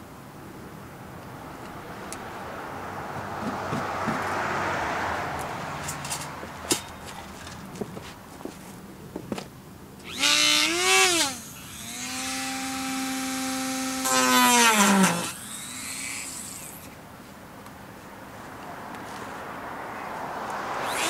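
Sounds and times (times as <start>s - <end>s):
power tool cutting plastic: 10.0s - 16.9s.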